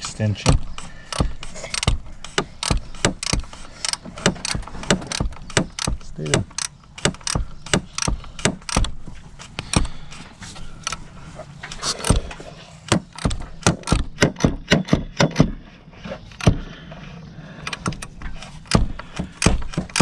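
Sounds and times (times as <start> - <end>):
socket wrench clicking on metal: 0.8 - 9.0.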